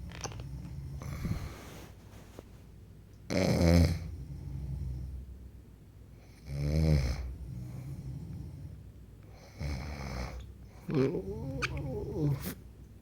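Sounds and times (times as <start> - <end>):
low breathing rumble: 0.0 - 2.1.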